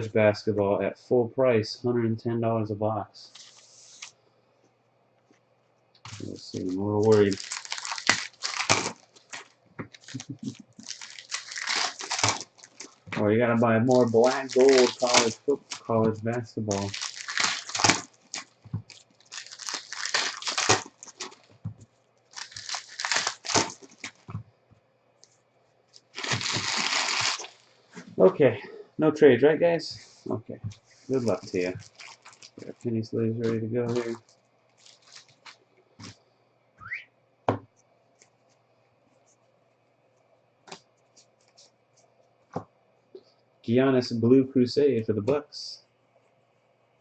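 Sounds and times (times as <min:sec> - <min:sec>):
packaging crinkling and tearing: 0:06.1 - 0:13.2, 0:13.8 - 0:21.6, 0:22.3 - 0:24.4, 0:26.0 - 0:27.7, 0:30.7 - 0:36.2.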